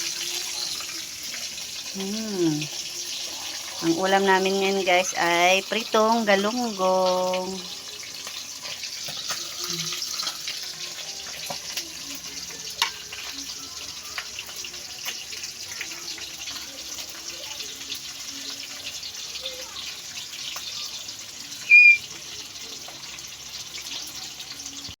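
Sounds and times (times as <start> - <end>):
fish frying in hot oil: 0.0 - 25.0
brief high-pitched tone: 21.7 - 22.0.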